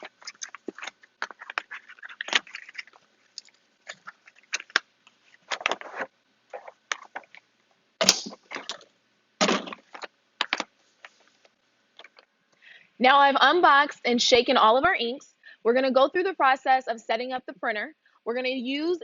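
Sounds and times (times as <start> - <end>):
packaging rustling and scraping: 0.0 - 7.5.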